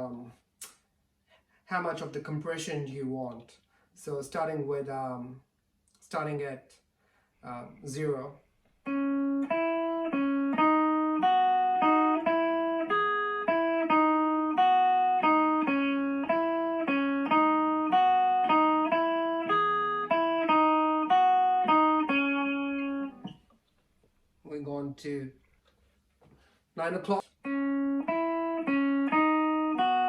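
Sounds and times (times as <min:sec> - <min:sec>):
guitar riff of picked notes: 0:07.6 - 0:23.5, 0:26.8 - 0:30.0.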